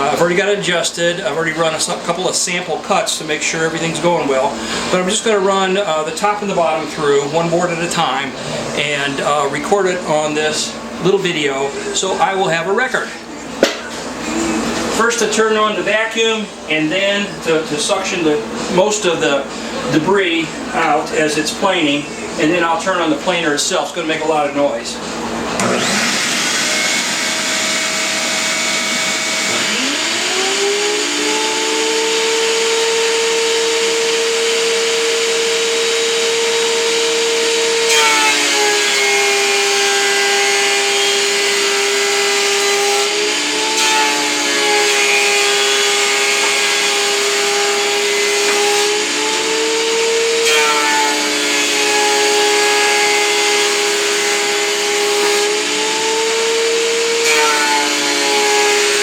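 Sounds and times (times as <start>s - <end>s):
vacuum running: 0.0s - 59.0s
planer cutting board: 25.5s - 59.0s
planer motor whining: 25.5s - 59.0s.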